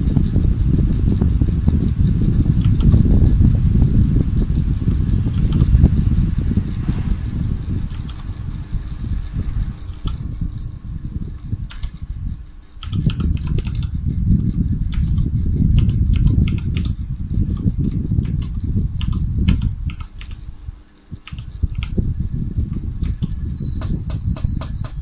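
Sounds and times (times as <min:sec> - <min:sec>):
loud low rumble: 0:00.0 - 0:25.0
mechanical keyboard clicks: 0:02.6 - 0:03.0, 0:05.3 - 0:05.7, 0:07.9 - 0:08.2, 0:09.9 - 0:10.2, 0:11.7 - 0:12.0, 0:12.8 - 0:14.0, 0:14.9 - 0:20.4, 0:21.2 - 0:22.0.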